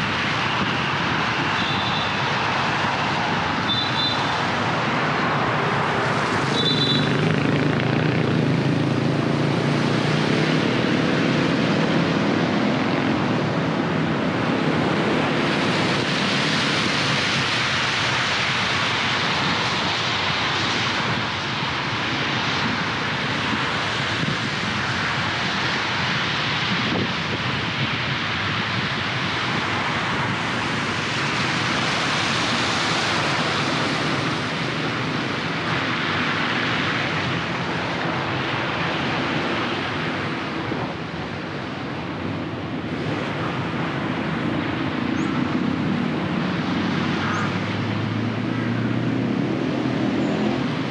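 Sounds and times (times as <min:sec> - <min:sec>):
vehicle engine drone: 0:00.0 - 0:50.9
tyres hissing on wet asphalt: 0:14.8 - 0:46.6.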